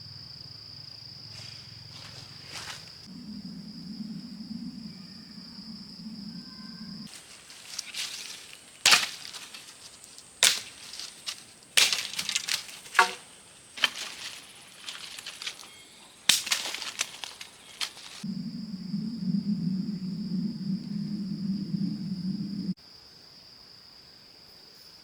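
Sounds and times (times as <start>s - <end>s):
sharp knocks and cracks: 7.5s - 18.2s.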